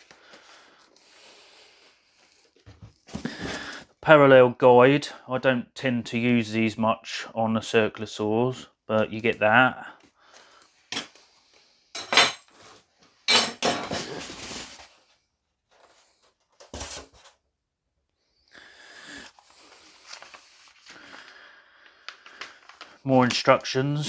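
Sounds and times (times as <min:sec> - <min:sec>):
packaging rustling: 0:14.0 - 0:15.0, 0:19.2 - 0:23.8.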